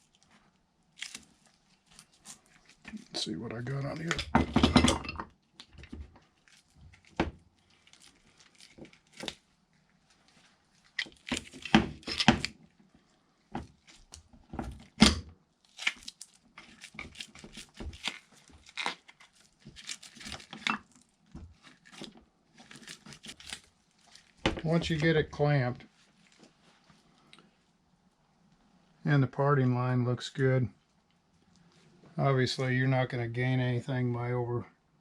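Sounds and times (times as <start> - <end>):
mold scraping and rustling: 15.8 - 27.1.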